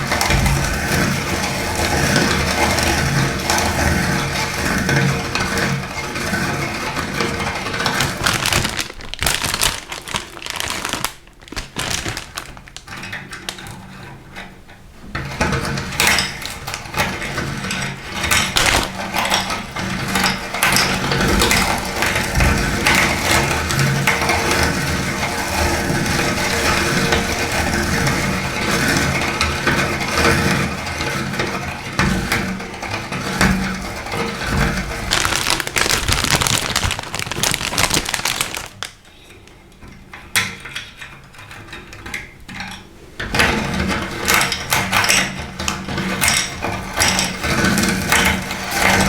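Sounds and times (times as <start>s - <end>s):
sticks crackling and crunching: 7.8s - 12.9s, 18.5s - 19.0s, 34.8s - 39.0s.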